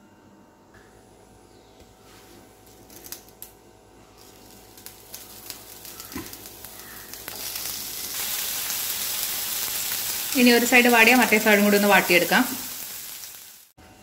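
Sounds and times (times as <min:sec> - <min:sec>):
leaves sizzling on hot pan: 0:04.1 - 0:13.8.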